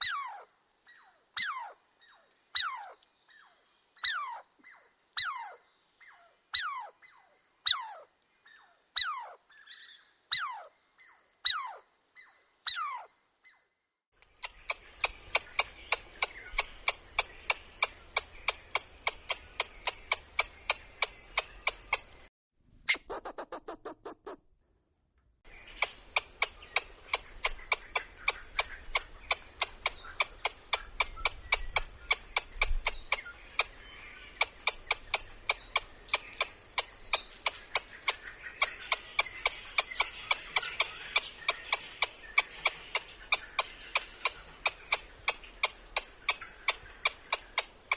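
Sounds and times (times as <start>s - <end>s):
squirrel clicking chirps: 0.0s - 3.1s, 4.0s - 10.7s, 14.2s - 22.3s, 25.5s - 47.9s
squirrel calling: 0.0s - 13.6s, 14.3s - 22.3s, 22.9s - 24.4s, 25.5s - 47.9s.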